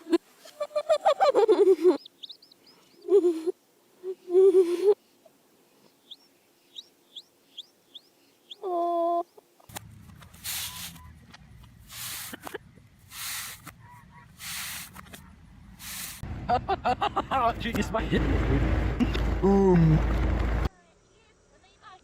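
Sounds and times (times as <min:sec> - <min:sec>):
noisy hiss: 0:09.7 - 0:13.8, 0:14.4 - 0:16.3
short high chirps: 0:10.4 - 0:11.2.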